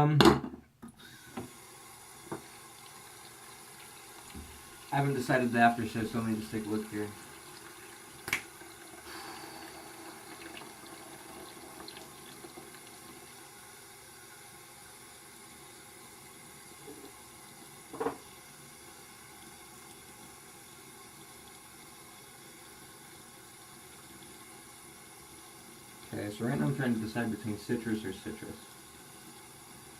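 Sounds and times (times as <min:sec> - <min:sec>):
sink tap running: 0:01.0 - 0:29.9
light knock on counter: 0:17.9 - 0:18.2.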